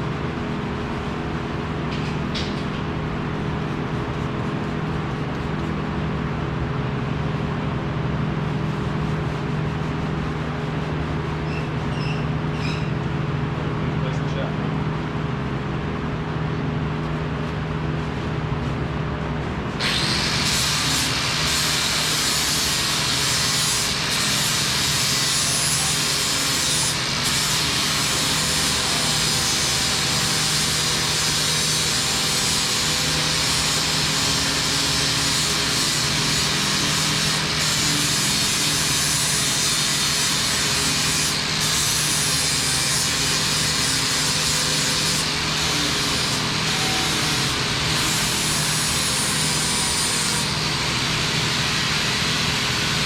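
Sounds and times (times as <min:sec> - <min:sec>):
metalworking tool harsh hiss: 0:19.8 - 0:53.0.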